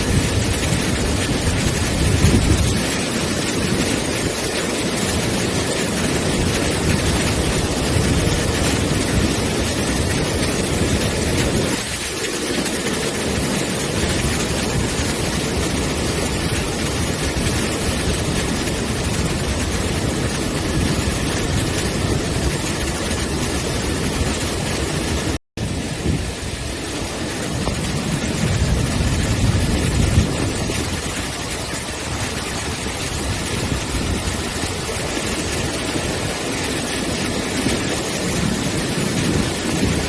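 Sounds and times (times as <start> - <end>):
heavy rain: 0.0 - 40.0
running floodwater: 0.0 - 40.0.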